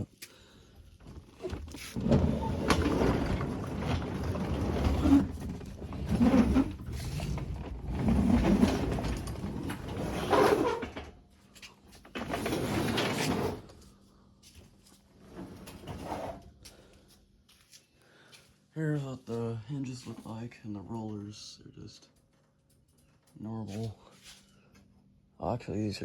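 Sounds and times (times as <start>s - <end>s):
garage door rollers rumbling: 1.0s - 11.2s, 12.1s - 13.7s.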